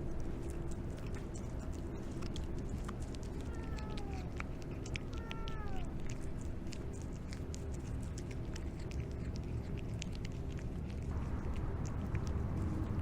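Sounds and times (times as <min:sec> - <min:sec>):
low hum: 0:00.0 - 0:13.0
cat meowing: 0:03.2 - 0:06.2.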